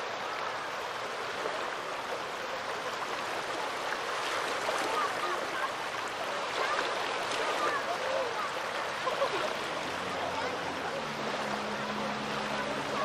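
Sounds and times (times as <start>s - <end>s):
small waves lapping on shore: 0.0s - 13.0s.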